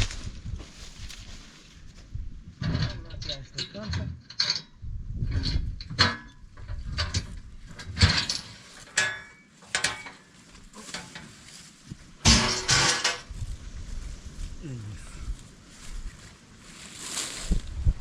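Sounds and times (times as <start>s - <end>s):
knocks and clatter of tools: 2.6s - 11.4s, 12.2s - 13.3s.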